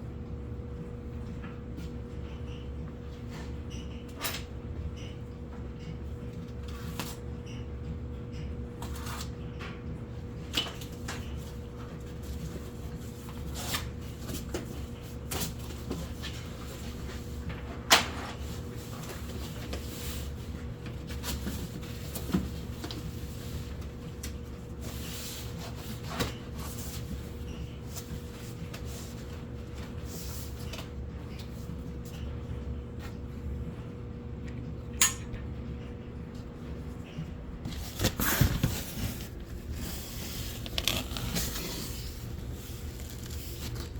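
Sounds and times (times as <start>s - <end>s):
steady hum: 23.3s - 43.9s
knocks and handling sounds: 37.6s - 43.9s.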